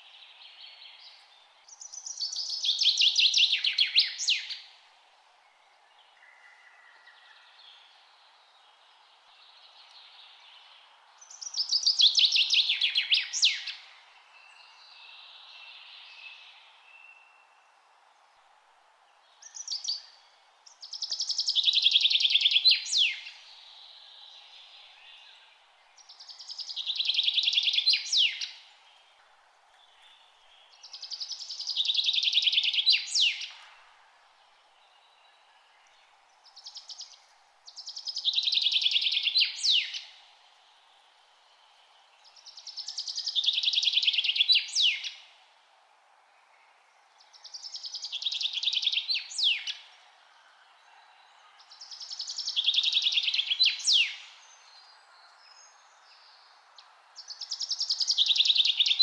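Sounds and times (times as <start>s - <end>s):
faint background hiss: 0.0s - 59.0s.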